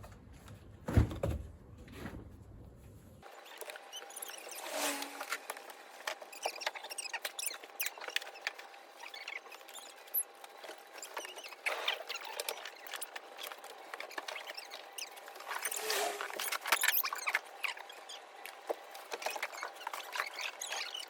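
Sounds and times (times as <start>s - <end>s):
high squeaks from fire: 3.4s - 10.2s, 14.4s - 18.2s.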